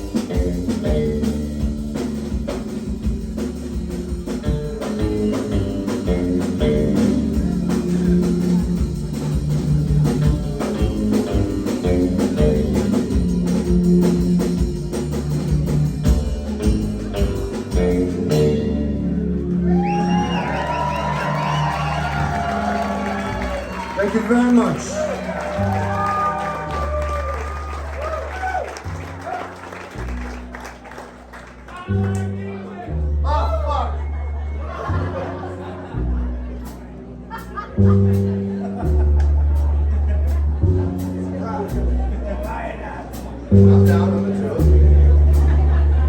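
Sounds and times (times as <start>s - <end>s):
live band playing: 0.0s - 46.0s
crowd cheering: 19.5s - 46.0s.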